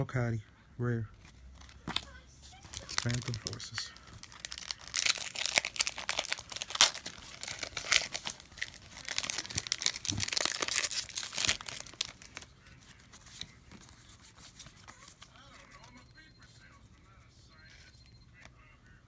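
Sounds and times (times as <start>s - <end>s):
foil wrapper tearing and crinkling: 1.6s - 15.9s.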